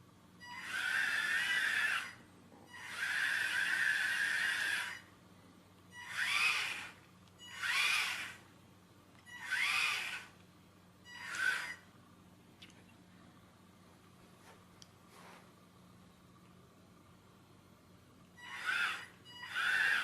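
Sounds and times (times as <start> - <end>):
small gear motors whirring: 0.4 - 5.1, 5.9 - 8.5, 9.2 - 10.4, 11.0 - 11.9, 18.3 - 20.0.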